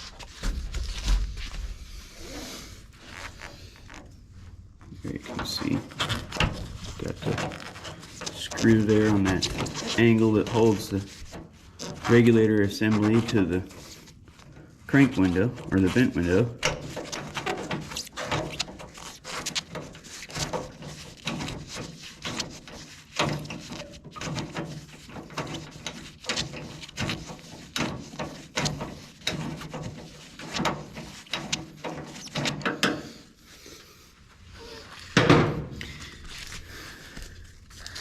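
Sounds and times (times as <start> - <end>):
hand tools clicking and knocking: 23.2 - 33.1.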